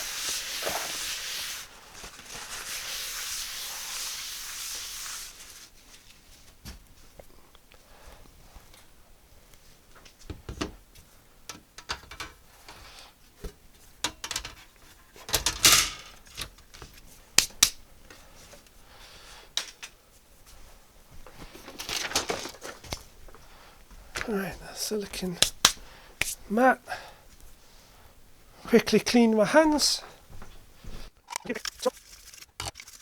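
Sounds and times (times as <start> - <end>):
small objects clicking and tapping: 11.5 - 12.8, 14.0 - 14.7
scraping rustle: 31.5 - 33.0.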